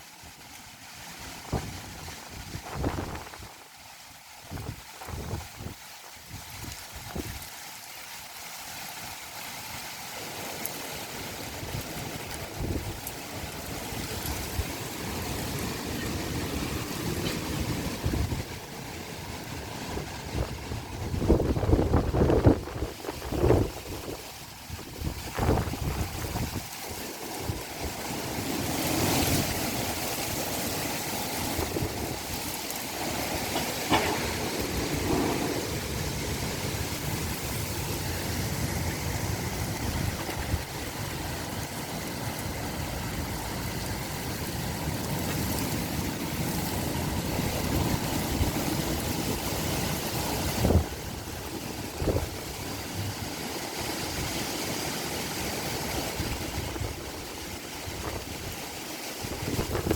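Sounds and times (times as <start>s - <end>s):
gusty wind buffeting microphone: 1.2s - 3.6s, 4.4s - 7.4s, 11.4s - 59.9s
sharp knocks: 33.5s - 35.4s.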